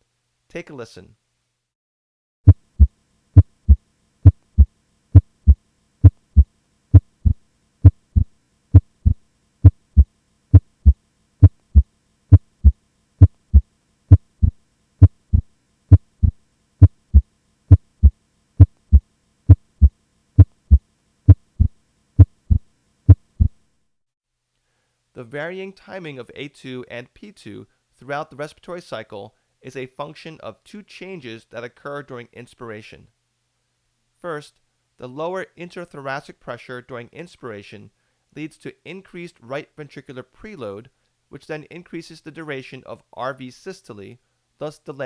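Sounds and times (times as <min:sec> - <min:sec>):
heartbeat through stethoscope: 0:02.4 - 0:23.6.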